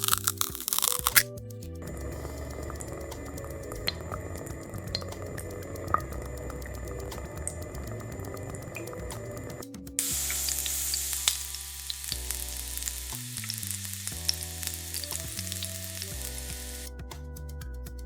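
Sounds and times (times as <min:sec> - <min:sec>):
soft background music: 0:00.0 - 0:18.0
food sizzling in a pan: 0:10.0 - 0:16.9.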